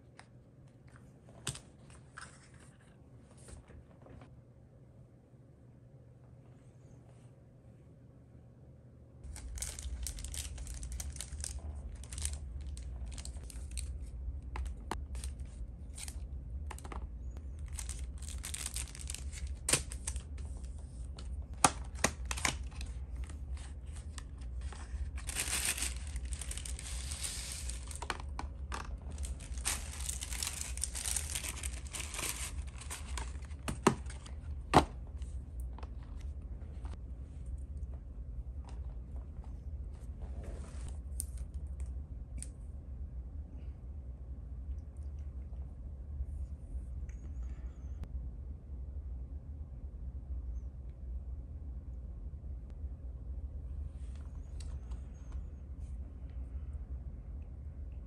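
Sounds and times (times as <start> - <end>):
low steady hum: 0.0 - 58.0
rustling and crinkling: 0.9 - 4.3, 9.2 - 41.6.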